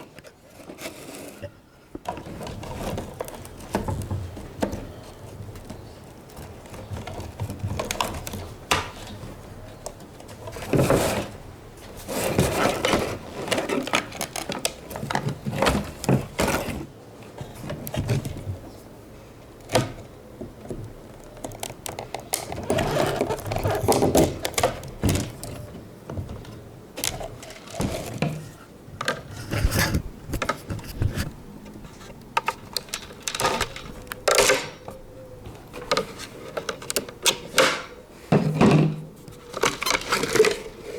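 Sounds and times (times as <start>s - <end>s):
plastic and metal parts clicking: 29.0s - 35.0s, 35.7s - 40.8s.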